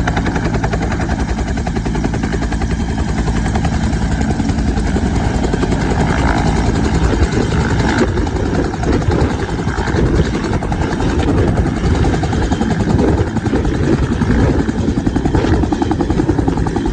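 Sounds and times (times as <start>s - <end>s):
helicopter rotor beating: 0.0s - 16.9s
turbine engine whine: 0.0s - 16.9s.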